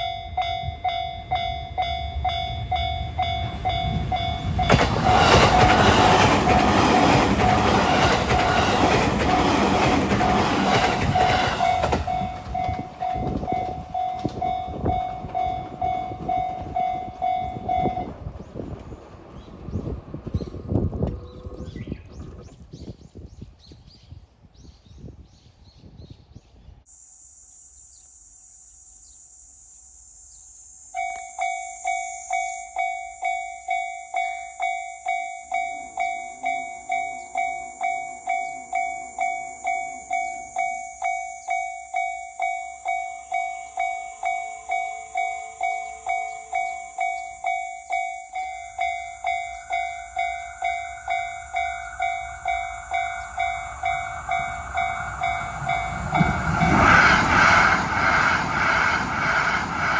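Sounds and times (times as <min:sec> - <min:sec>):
level crossing warning bell: 0:00.0 - 0:18.1, 0:31.0 - 0:56.2
approaching train: 0:00.0 - 0:22.8, 0:31.9 - 0:59.9.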